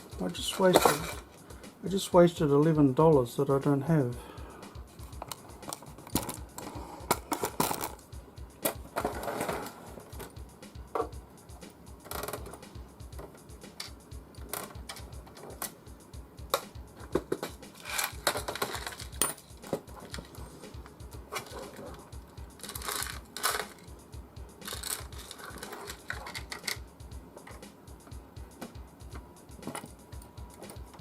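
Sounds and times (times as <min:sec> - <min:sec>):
background music with low beat: 0:00.0 - 0:31.0
plastic parts and screws clicking: 0:13.8 - 0:15.8, 0:16.5 - 0:20.4, 0:22.6 - 0:23.9, 0:24.6 - 0:26.8.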